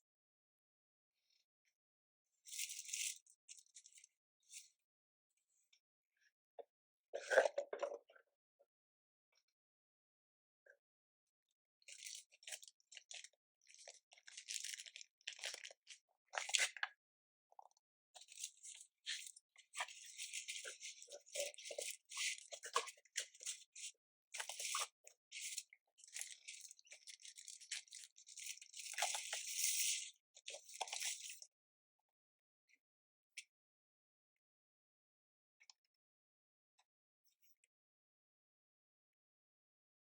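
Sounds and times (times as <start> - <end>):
packaging rustling and crinkling: 13.8 - 15.7.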